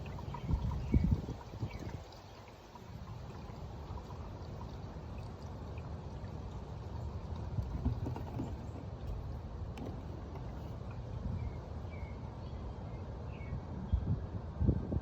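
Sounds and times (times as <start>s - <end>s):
oil pouring from bottle: 0.0s - 11.0s.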